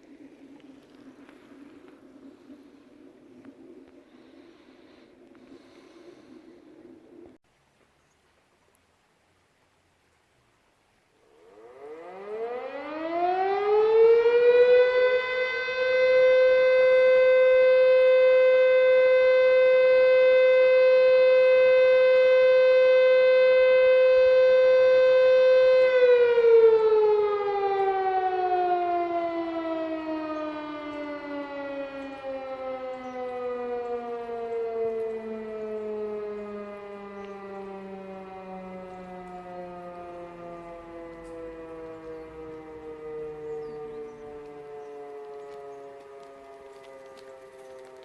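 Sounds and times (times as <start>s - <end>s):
electric motor siren wailing: 11.2s - 48.0s.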